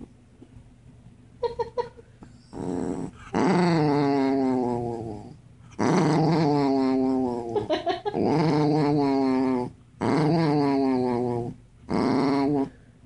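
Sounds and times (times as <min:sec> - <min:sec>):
dog growling: 0:02.5 - 0:12.8.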